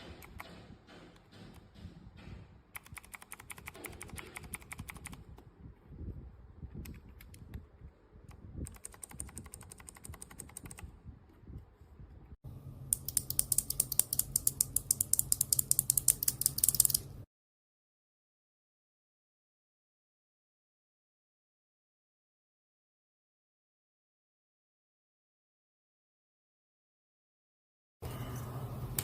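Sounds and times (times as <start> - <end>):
clicky keyboard typing: 2.8 - 5.2, 8.3 - 10.9, 13.0 - 17.1
low steady hum: 11.0 - 17.2.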